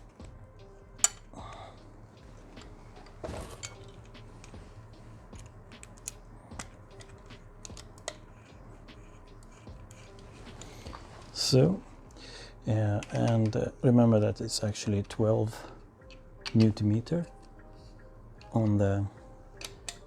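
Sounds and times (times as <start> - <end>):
rustling scrape: 2.2 - 5.3, 8.2 - 11.6
small metal parts clinking: 2.4 - 11.0.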